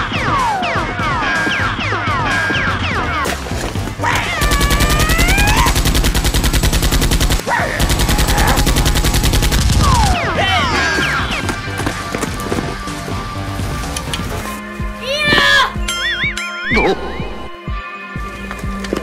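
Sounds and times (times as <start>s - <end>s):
background music: 0.0s - 19.0s
rapid automatic gunfire: 4.4s - 10.2s.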